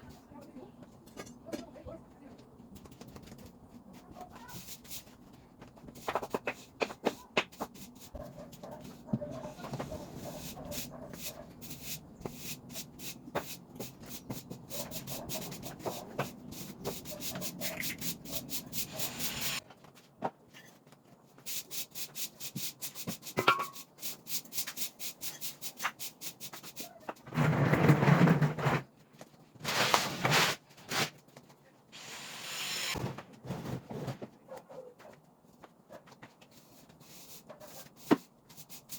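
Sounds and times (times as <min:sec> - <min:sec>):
scrubbing and rubbing strokes: 0:09.4 - 0:19.6.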